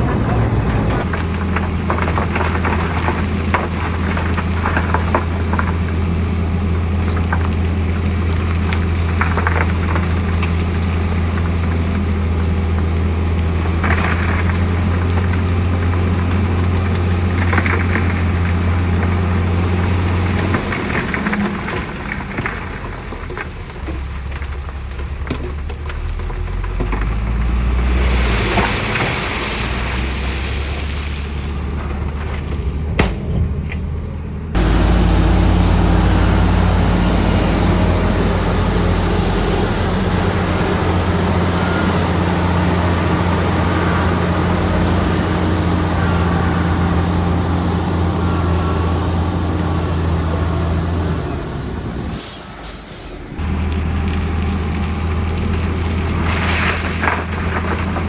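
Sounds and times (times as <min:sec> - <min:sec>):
heavy diesel engine running: 0:00.0 - 0:20.3, 0:34.6 - 0:54.1.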